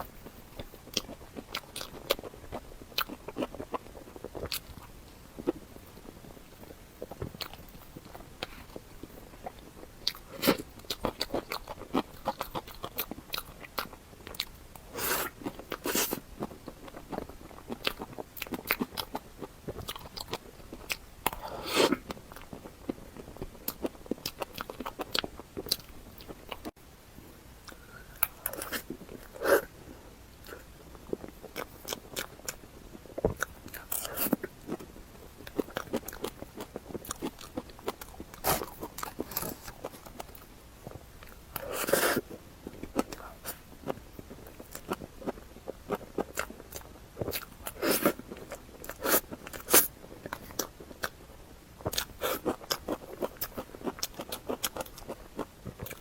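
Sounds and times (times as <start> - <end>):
crunchy chewing: 0.0 - 26.7, 30.4 - 56.0.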